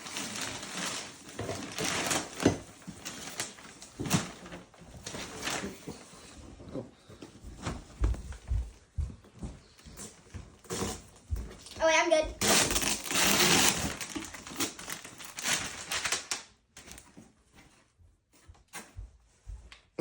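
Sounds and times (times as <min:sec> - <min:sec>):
wrapping paper rustling and tearing: 0:00.0 - 0:06.1, 0:12.4 - 0:17.1.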